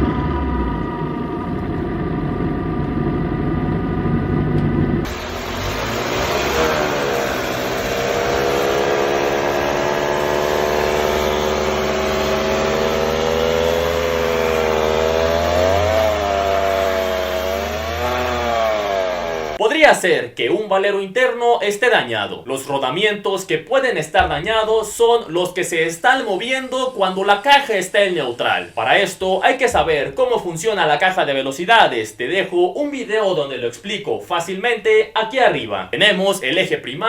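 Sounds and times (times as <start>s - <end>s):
transmission whining drone: 0.0s - 19.6s.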